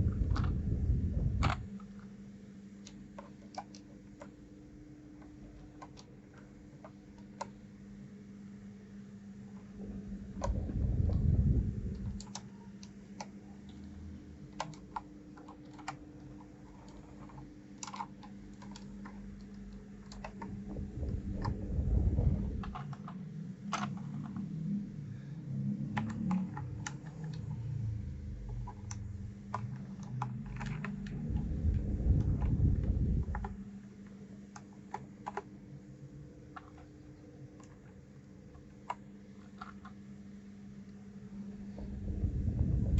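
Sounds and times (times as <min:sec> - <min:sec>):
low rumbling handling bumps: 0:00.0 - 0:01.7, 0:09.9 - 0:12.1, 0:20.4 - 0:22.8, 0:31.1 - 0:33.6, 0:41.6 - 0:42.9
steady low hum: 0:00.0 - 0:42.9.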